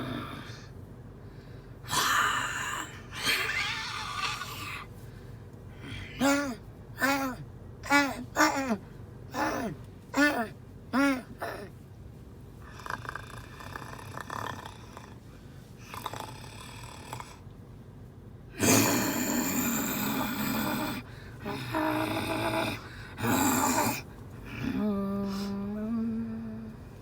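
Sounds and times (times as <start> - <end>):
child making vocal sound effects: 5.8 - 11.7, 18.6 - 27.0.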